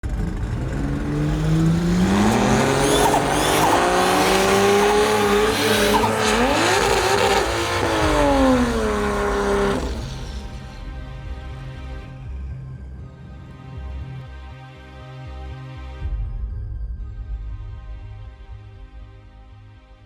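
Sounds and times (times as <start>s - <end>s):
race car engine at full throttle: 0.0s - 11.9s.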